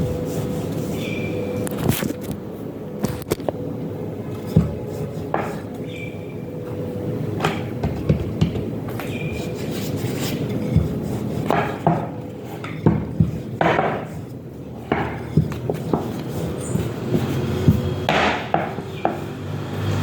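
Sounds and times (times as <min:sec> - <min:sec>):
kitchen utensils scraping: 0:08.9 - 0:19.1.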